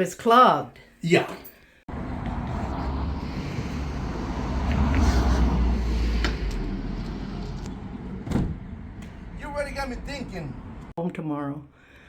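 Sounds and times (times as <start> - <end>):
car rumbling on road: 1.9 - 10.9.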